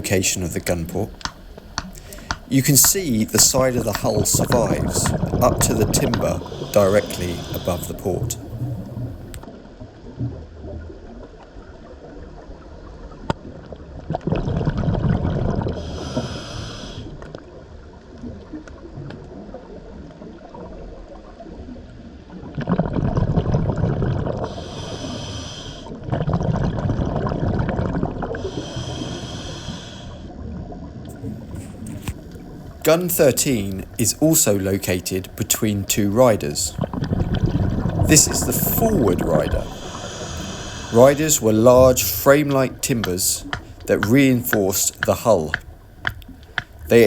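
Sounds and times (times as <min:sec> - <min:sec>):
bubbling exhalations underwater: 0:00.0 - 0:09.4, 0:31.2 - 0:47.0
regulator hiss: 0:00.0 - 0:09.4, 0:24.5 - 0:25.9, 0:38.1 - 0:47.0.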